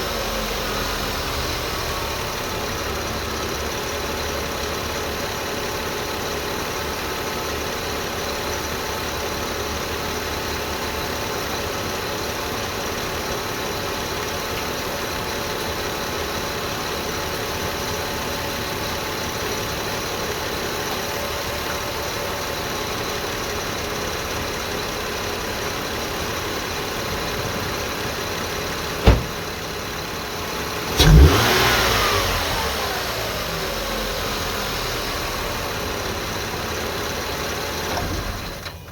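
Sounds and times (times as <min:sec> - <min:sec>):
car engine idling with whine: 0:00.0 - 0:38.9
engine revving: 0:30.8 - 0:35.5.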